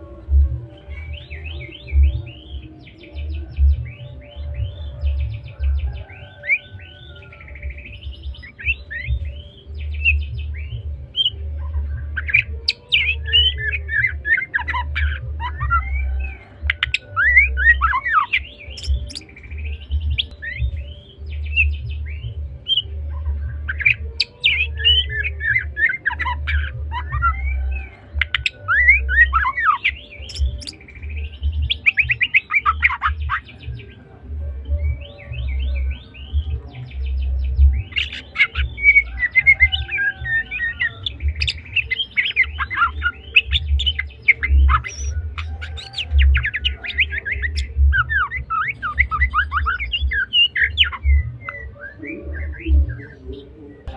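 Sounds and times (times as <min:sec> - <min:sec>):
bird singing whistles and trills: 0:00.0 - 0:53.9.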